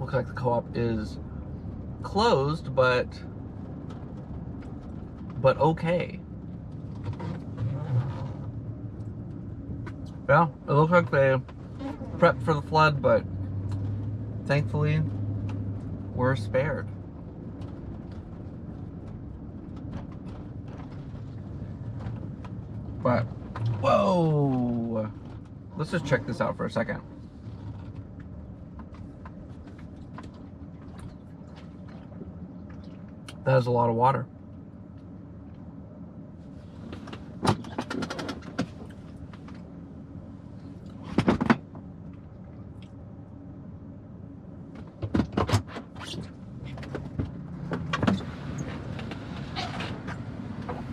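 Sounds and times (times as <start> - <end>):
car engine rumble from inside: 0.0 - 50.9
clicking and rattling: 37.0 - 39.6.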